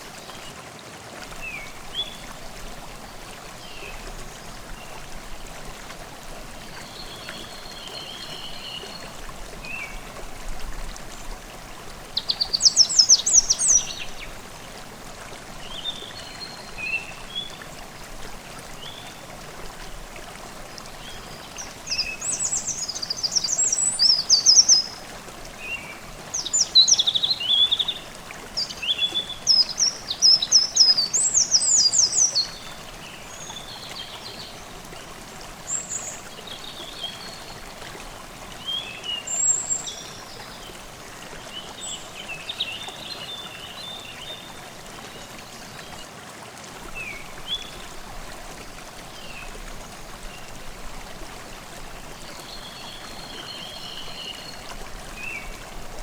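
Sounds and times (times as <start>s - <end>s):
stream babbling: 0.0s - 56.0s
songbirds singing: 12.1s - 14.4s, 20.6s - 34.8s, 51.9s - 55.6s.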